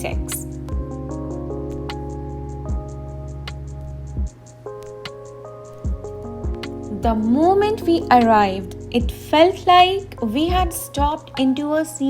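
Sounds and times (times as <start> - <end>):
low drum beat: 0.0 - 4.4, 5.8 - 9.2, 10.4 - 11.2
bass line: 5.9 - 11.1.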